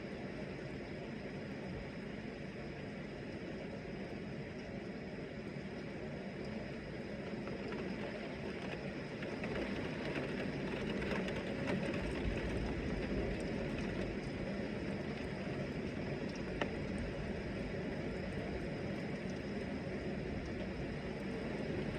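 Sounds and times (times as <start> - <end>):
heavy rain: 7.6 - 18.4.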